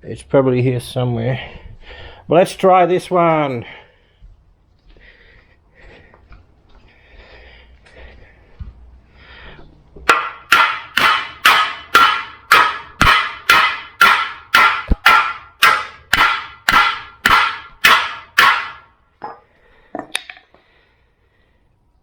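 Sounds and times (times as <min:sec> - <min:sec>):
hammer striking metal: 0:10.0 - 0:19.4.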